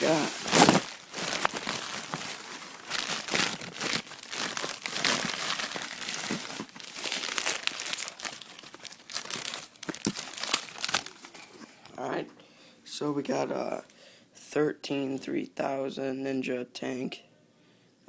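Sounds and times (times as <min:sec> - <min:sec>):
packaging crinkling: 0:00.0 - 0:11.5.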